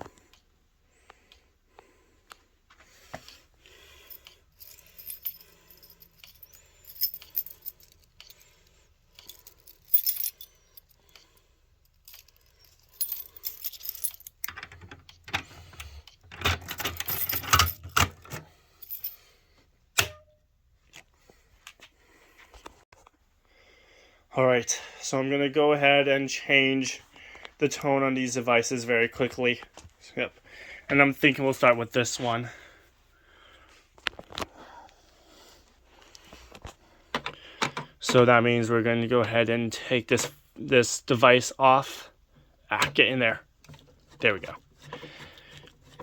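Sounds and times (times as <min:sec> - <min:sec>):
keys jangling: 0:04.1 - 0:08.4, 0:09.2 - 0:11.2, 0:11.9 - 0:15.5, 0:16.3 - 0:19.2.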